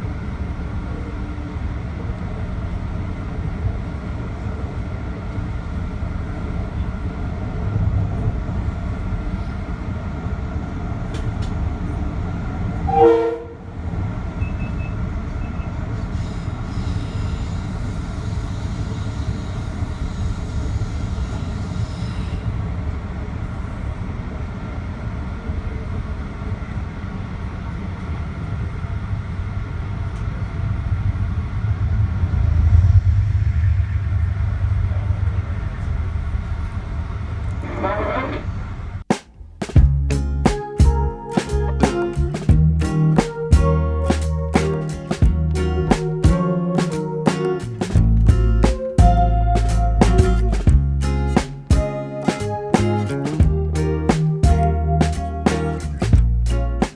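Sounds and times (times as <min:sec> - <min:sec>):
train wheels and motors rumbling: 0:00.0 - 0:53.8
train horn blast: 0:12.8 - 0:14.0.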